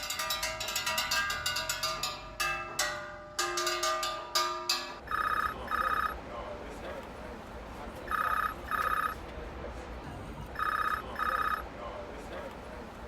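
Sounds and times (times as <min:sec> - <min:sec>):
telephone ringing: 0:05.0 - 0:06.2, 0:08.1 - 0:09.2, 0:10.6 - 0:11.7.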